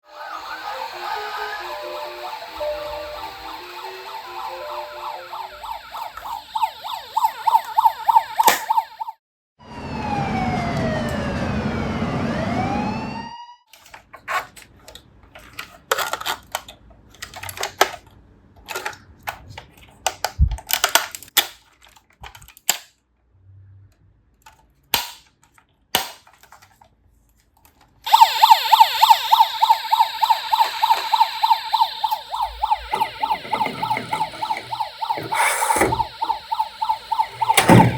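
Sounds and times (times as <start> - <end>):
toy police siren beeping: 0.1 - 9.2, 28.1 - 37.9
sharp clicks and knocks: 37.1 - 37.9.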